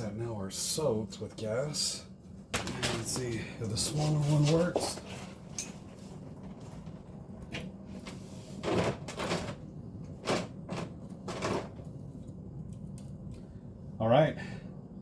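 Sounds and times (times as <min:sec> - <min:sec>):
low steady hum: 0:00.0 - 0:15.0
scraping and rustling handling: 0:02.6 - 0:09.6.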